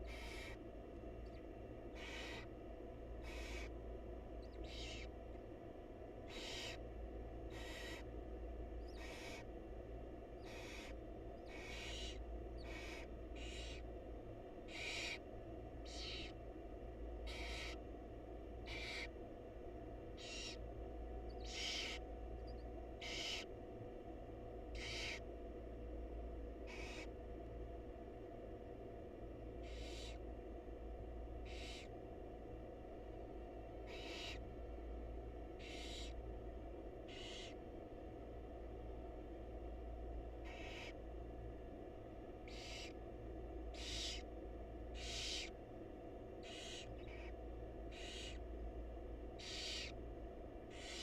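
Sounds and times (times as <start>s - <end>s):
owl nestlings hissing calls: 0.0s - 0.6s, 1.3s - 2.5s, 3.2s - 3.8s, 4.4s - 5.1s, 6.3s - 6.8s, 7.5s - 8.1s, 8.8s - 9.5s, 10.4s - 13.9s, 14.7s - 15.2s, 15.8s - 16.4s, 17.3s - 17.8s, 18.6s - 19.1s, 20.2s - 20.6s, 21.3s - 23.5s, 24.7s - 25.2s, 26.7s - 27.1s, 29.6s - 30.2s, 31.4s - 31.9s, 33.9s - 34.4s, 35.6s - 36.2s, 37.1s - 37.6s, 40.4s - 41.0s, 42.5s - 43.0s, 43.7s - 44.3s, 45.0s - 45.6s, 46.4s - 48.4s, 49.4s - 50.0s, 50.7s - 51.0s
steady low hum: 0.0s - 51.0s.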